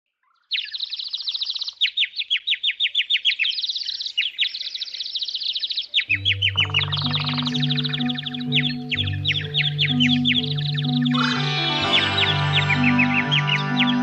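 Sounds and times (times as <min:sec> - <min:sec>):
bird singing sharp chirps: 0:00.4 - 0:14.0
low held music tones: 0:06.1 - 0:14.0.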